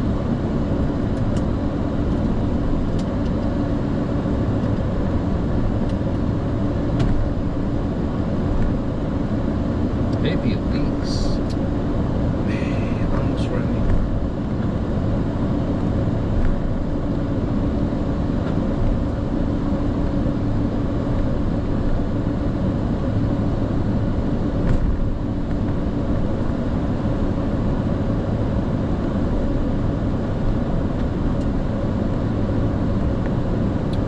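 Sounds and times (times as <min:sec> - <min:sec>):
hum of engines and airflow: 0:00.0 - 0:34.0.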